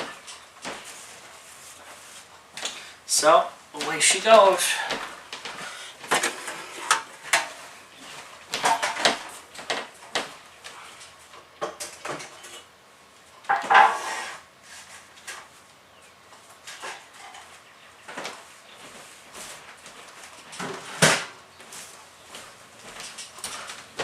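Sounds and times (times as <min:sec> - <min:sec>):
objects clattering: 0:05.0 - 0:10.4, 0:13.5 - 0:14.4.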